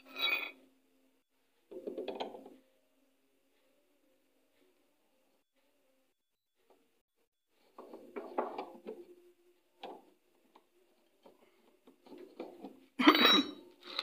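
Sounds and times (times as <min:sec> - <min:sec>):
tools clinking and scraping: 0:00.0 - 0:00.6, 0:12.0 - 0:14.0.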